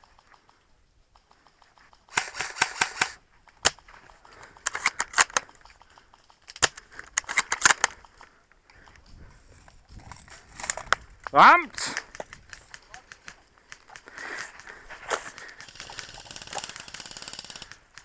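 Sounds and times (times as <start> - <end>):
airsoft guns firing: 2.1 - 8.0, 12.6 - 18.0.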